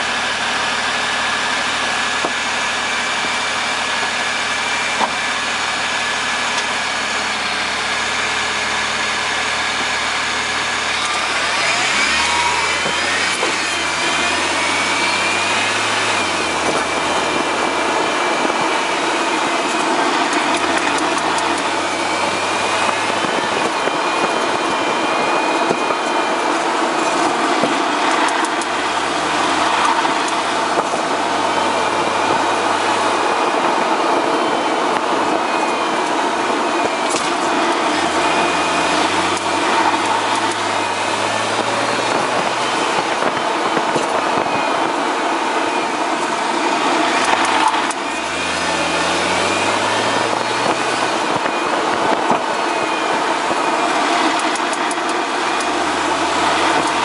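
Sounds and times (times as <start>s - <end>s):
car engine idling: 0.0s - 57.0s.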